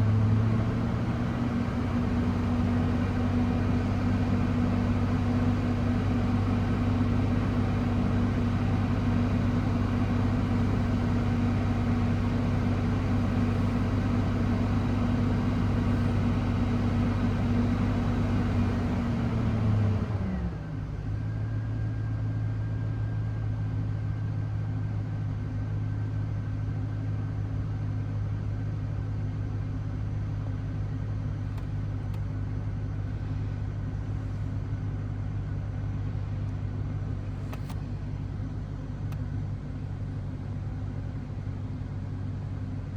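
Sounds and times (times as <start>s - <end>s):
car engine idling: 0.0s - 20.2s, 31.3s - 42.9s.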